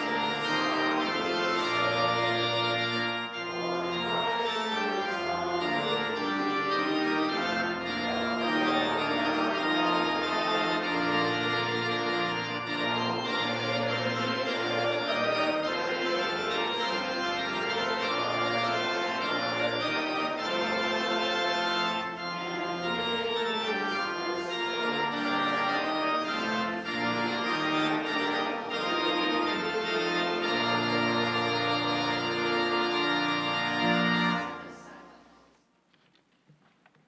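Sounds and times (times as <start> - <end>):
church organ playing a hymn: 0.0 - 35.3.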